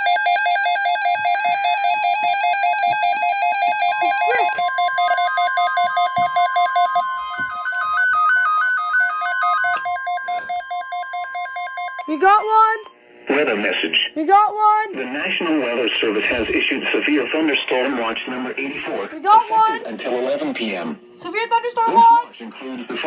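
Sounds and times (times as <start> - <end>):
steady warning tone: 0.0 - 13.4.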